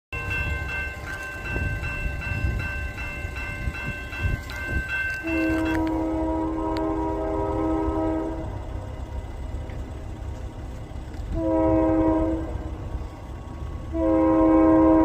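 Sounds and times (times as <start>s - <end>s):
pulsing high ringing tone: 0.2s - 6.4s
train rumbling past: 0.2s - 15.0s
locomotive air horn: 5.2s - 8.8s, 11.3s - 12.9s, 13.9s - 15.0s.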